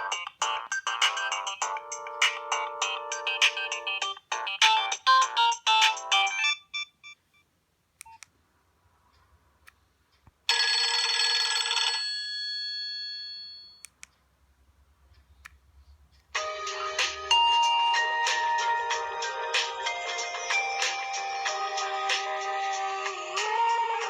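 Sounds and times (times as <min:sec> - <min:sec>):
phone ringtone melody: 0:00.0 - 0:07.2, 0:10.5 - 0:13.8, 0:16.4 - 0:22.6.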